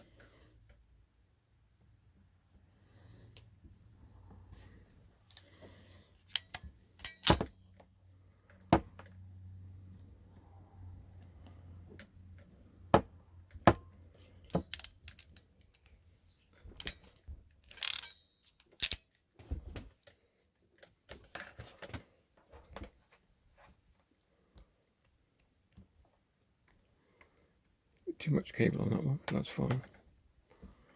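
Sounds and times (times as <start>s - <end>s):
connectors and tools clicking: 5.2s - 5.6s, 6.2s - 7.6s, 13.5s - 16.0s, 16.6s - 19.2s.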